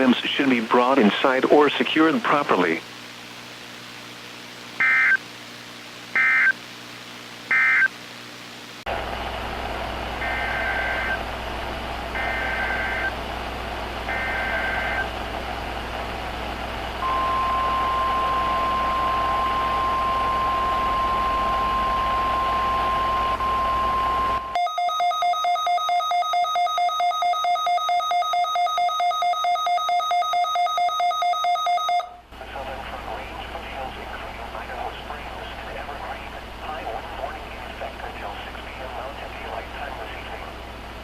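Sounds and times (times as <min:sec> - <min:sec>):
hum and hiss: 0:00.0 - 0:24.5, 0:32.2 - 0:41.0
rapid electronic alert beeping: 0:04.8 - 0:05.2, 0:06.2 - 0:06.6, 0:07.5 - 0:07.9, 0:12.2 - 0:13.1
steady alarm tone: 0:04.8 - 0:05.2, 0:06.2 - 0:06.6, 0:07.5 - 0:07.9, 0:10.2 - 0:11.2, 0:12.1 - 0:13.2, 0:14.0 - 0:15.2, 0:17.0 - 0:32.2
two-tone digital data screech: 0:04.8 - 0:05.2, 0:06.2 - 0:06.6, 0:07.5 - 0:07.9, 0:12.2 - 0:13.1, 0:14.1 - 0:15.1.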